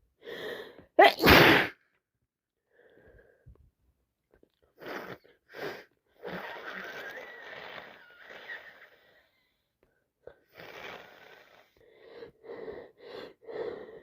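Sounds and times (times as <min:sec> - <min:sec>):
woman sneezing: 0:01.0 - 0:01.8
congested breathing with whistle: 0:04.8 - 0:09.7.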